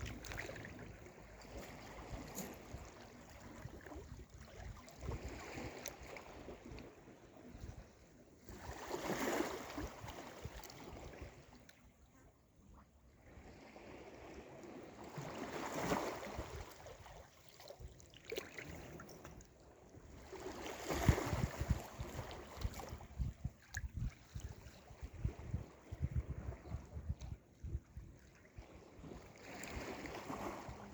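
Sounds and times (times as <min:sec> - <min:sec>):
sea waves breaking: 0:08.5 - 0:11.5, 0:13.2 - 0:17.6, 0:20.1 - 0:23.6, 0:28.6 - 0:30.9
wind buffeting microphone: 0:20.2 - 0:30.9.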